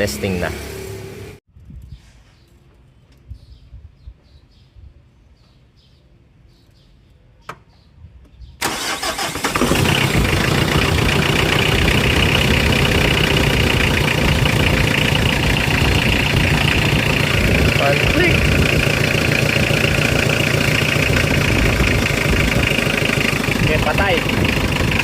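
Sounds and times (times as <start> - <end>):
starter motor click: 8.6 - 12.3
diesel engine starting and running: 8.6 - 25.0.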